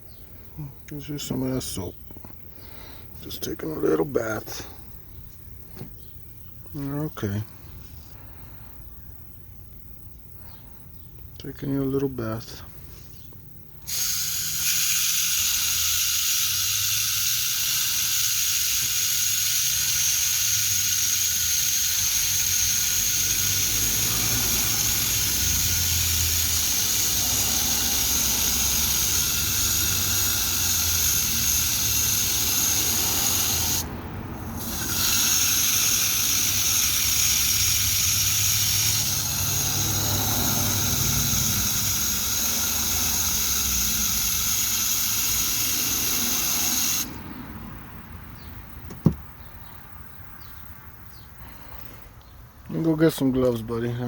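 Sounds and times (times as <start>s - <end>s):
running water hissing: 13.8s - 47.4s.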